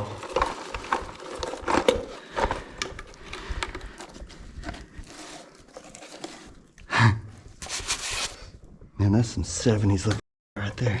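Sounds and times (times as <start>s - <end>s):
footsteps on loose rubble: 0.0s - 6.5s.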